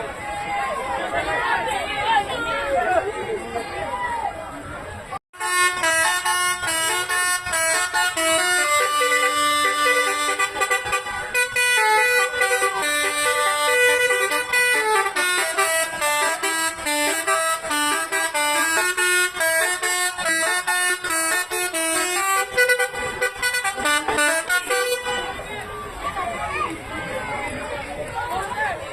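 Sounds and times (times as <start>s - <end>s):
bus horn playing a tune: 5.3s - 25.6s.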